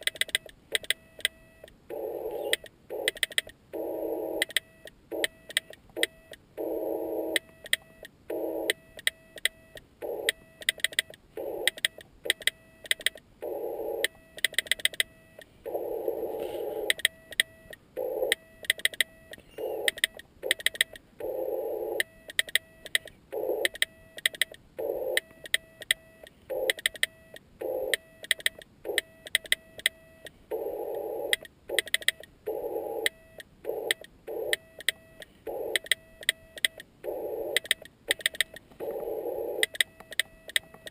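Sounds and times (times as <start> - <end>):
morse code tone: 0.0 - 3.1, 15.0 - 20.6.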